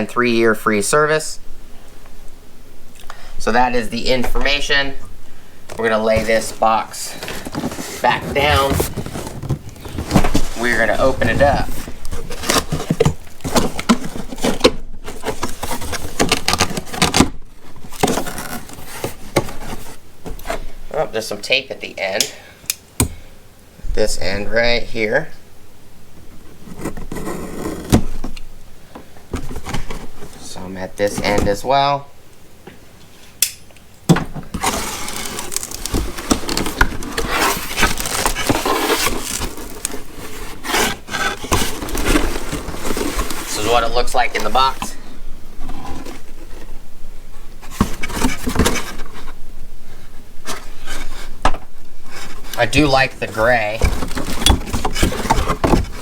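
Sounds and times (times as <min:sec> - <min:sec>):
cardboard and tape crackling: 0:05.7 - 0:20.8, 0:34.4 - 0:56.0
cardboard scrapes: 0:05.8 - 0:20.7, 0:26.4 - 0:28.3, 0:34.5 - 0:44.8, 0:50.4 - 0:51.4, 0:52.0 - 0:56.0
cardboard box knocks and rustles: 0:07.4 - 0:17.3.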